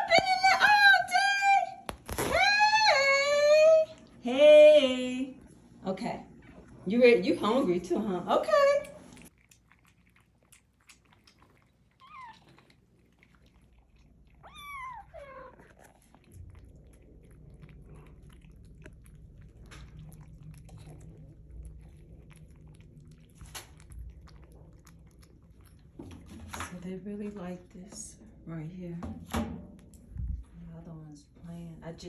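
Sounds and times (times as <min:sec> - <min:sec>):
low steady hum: 0:00.0 - 0:32.0
faint clicks of cats eating: 0:08.8 - 0:28.2
cat meowing: 0:12.0 - 0:12.6, 0:14.4 - 0:15.7.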